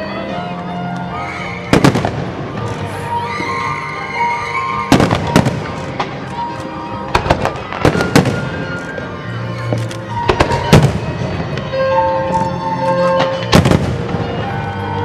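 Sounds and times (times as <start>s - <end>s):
music playing: 0.0s - 15.0s
fireworks bursting: 1.2s - 6.4s, 7.1s - 9.0s.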